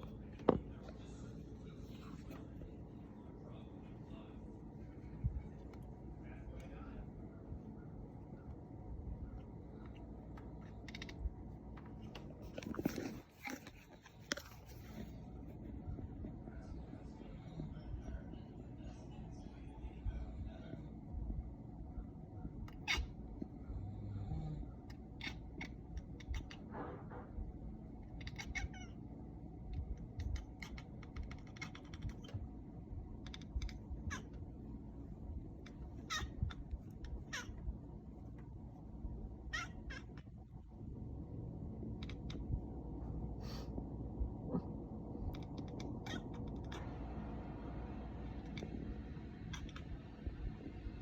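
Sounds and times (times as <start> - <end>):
cat chattering: 9.3 - 11.5, 22.5 - 23.3, 24.7 - 26.7, 28.0 - 29.1, 29.7 - 38.2, 38.8 - 40.7, 41.8 - 42.8, 44.4 - 50.8
cat chirps and meows: 22.7 - 23.2, 25.1 - 26.7, 28.0 - 29.0, 30.1 - 32.4, 33.2 - 34.5, 35.6 - 37.8, 39.4 - 40.4, 45.3 - 47.2, 48.3 - 50.4.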